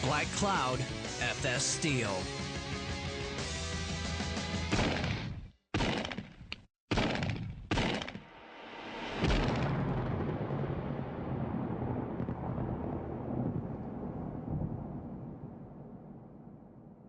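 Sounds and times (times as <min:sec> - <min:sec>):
gunshot-like blasts: 0:04.7 - 0:06.2, 0:06.9 - 0:08.3
deep boom with rumble: 0:09.0 - 0:17.0.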